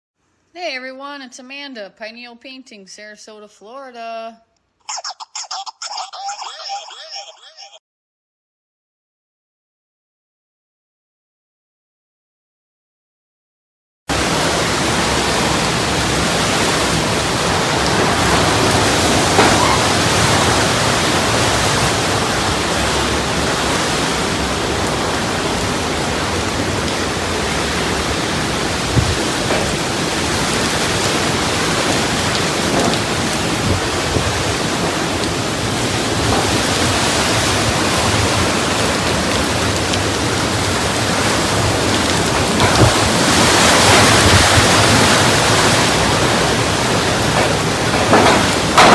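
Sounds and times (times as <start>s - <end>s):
rain and wind rushing: 14.1s - 48.9s.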